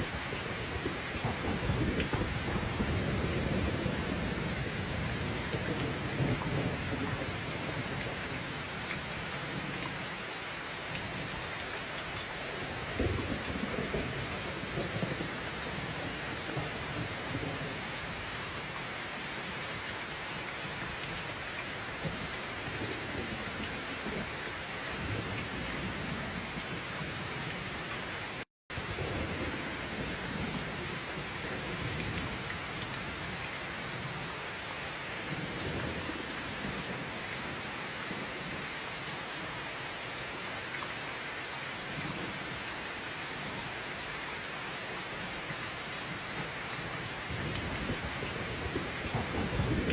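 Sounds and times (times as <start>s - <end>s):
distant thunder rumbling: 0.7s - 7.8s, 47.3s - 49.9s.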